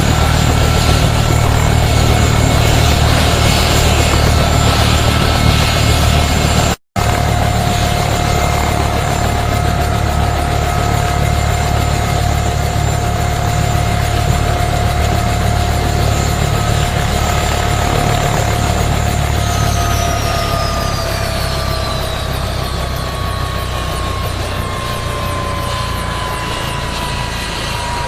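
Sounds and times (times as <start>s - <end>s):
helicopter turbine whine: 0.0s - 28.0s
low rotor rumble: 0.0s - 28.0s.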